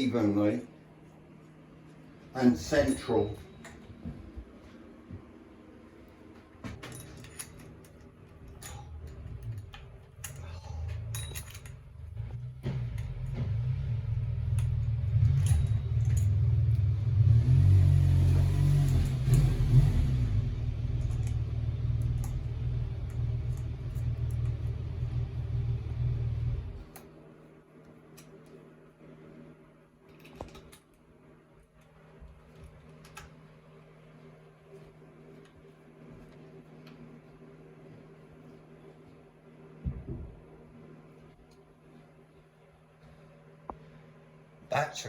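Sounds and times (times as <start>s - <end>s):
metal tools clicking on bolts: 6.8s - 12.1s, 14.5s - 16.9s
deep rumble: 11.8s - 26.9s.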